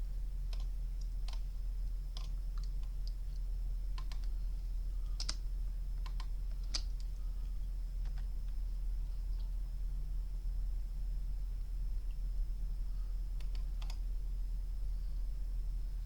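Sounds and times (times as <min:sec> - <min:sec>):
faint high whine: 0:00.0 - 0:16.0
low electrical hum: 0:00.0 - 0:16.0
keyboard and mouse clicks: 0:00.5 - 0:01.4, 0:02.2 - 0:03.2, 0:04.0 - 0:04.3, 0:05.2 - 0:05.4, 0:06.0 - 0:07.1, 0:13.4 - 0:14.0.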